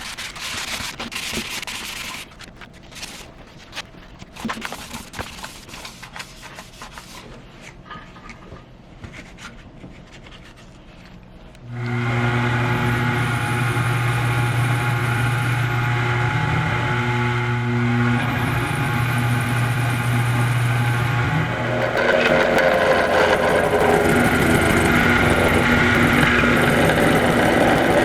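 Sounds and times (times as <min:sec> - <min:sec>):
electric machine humming: 0:11.6 - 0:28.0.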